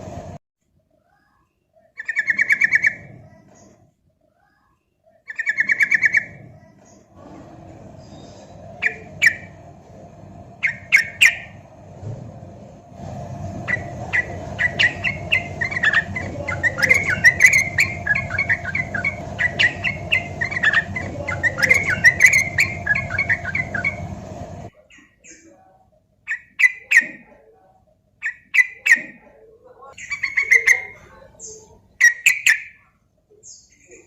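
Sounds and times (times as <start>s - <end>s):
bird singing: 1.8s - 3.7s, 5.1s - 7.1s, 8.0s - 9.6s, 10.6s - 11.7s, 13.6s - 25.6s, 28.2s - 29.2s, 29.9s - 34.0s.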